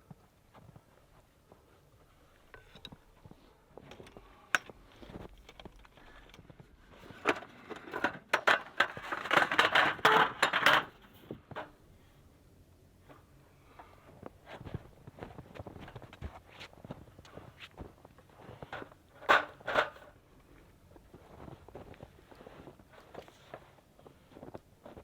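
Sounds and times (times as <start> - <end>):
small hard objects clattering: 7.0 - 11.1.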